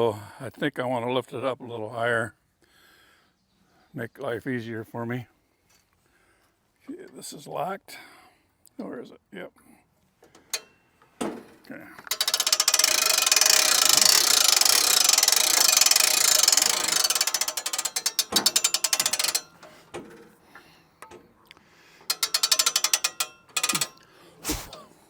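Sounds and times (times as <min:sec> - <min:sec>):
ratchet clicking rapidly: 0:12.0 - 0:21.2, 0:21.9 - 0:24.8.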